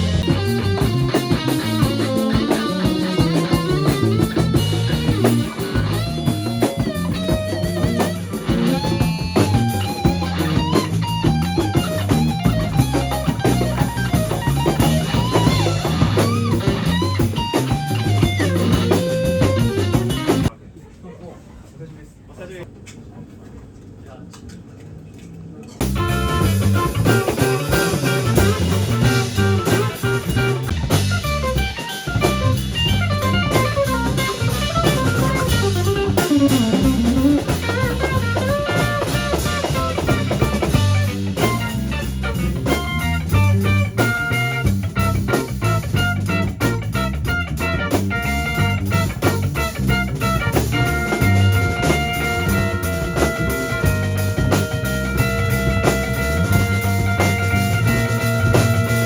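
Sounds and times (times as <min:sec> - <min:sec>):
drum kit beat: 0:00.0 - 0:20.5, 0:25.8 - 0:59.0
guitar playing: 0:00.0 - 0:20.5, 0:25.8 - 0:59.0.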